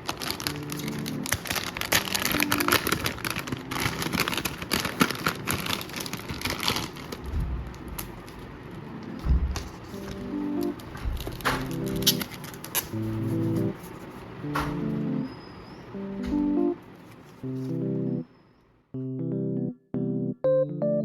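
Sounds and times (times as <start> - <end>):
packaging crinkling and rustling: 0.0 - 14.8.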